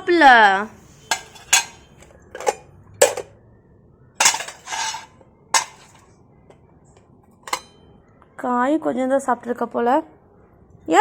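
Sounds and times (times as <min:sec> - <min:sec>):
containers and spoon clinking: 0:01.0 - 0:03.3, 0:04.2 - 0:06.0, 0:07.5 - 0:07.8.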